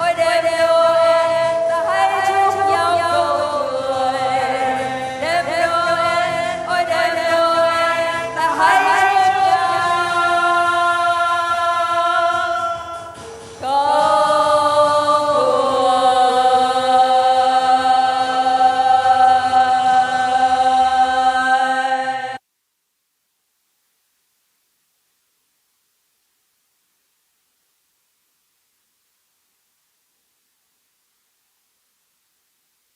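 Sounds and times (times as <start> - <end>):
choir singing a carol: 0.0 - 22.4.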